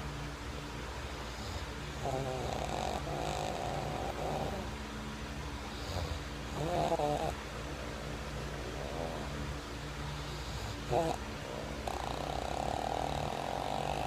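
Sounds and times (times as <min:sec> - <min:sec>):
steady low hum: 0:00.0 - 0:14.0
man snoring with wavering tones: 0:01.4 - 0:04.7, 0:05.8 - 0:07.4, 0:10.3 - 0:14.0.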